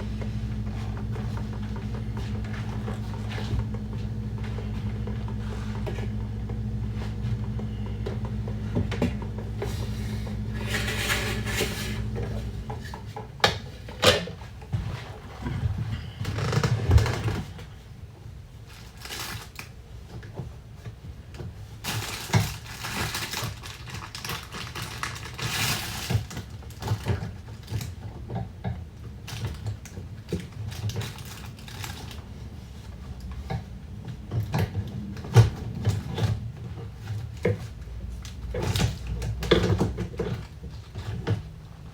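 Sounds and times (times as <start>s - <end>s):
steady low hum: 0.0s - 18.0s.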